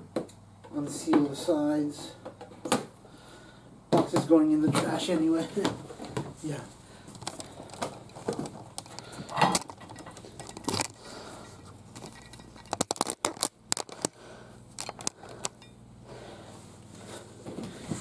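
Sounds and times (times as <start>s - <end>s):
sharp clicks and crackles: 12.0s - 15.7s.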